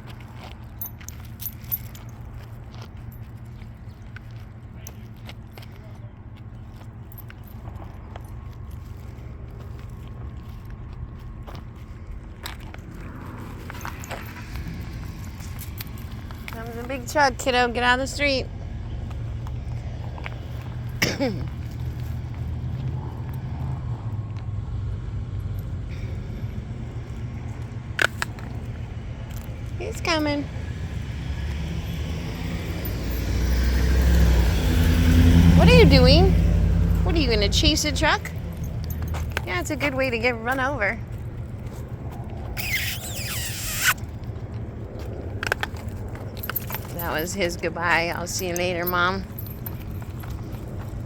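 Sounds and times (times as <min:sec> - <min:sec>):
truck engine rumbling: 0:00.0 - 0:51.0
air hiss with squeal: 0:42.6 - 0:44.0.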